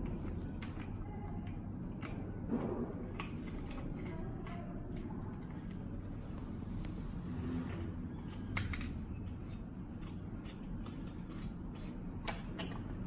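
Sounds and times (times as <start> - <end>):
steady low hum: 0.0 - 13.0
small metal clicks and taps: 8.3 - 13.0.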